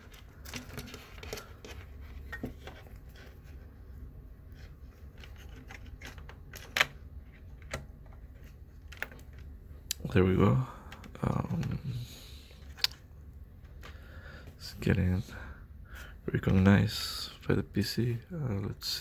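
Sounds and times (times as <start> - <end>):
cable handling clicks and rustles: 0.0 - 14.9.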